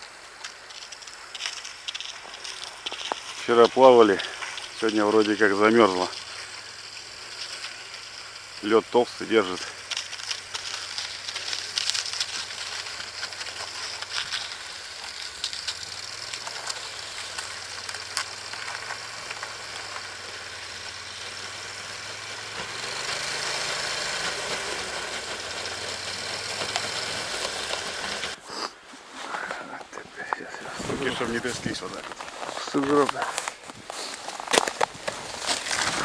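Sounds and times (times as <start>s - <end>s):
engine running: 0.0s - 28.4s
loud hissing rush: 0.0s - 28.8s.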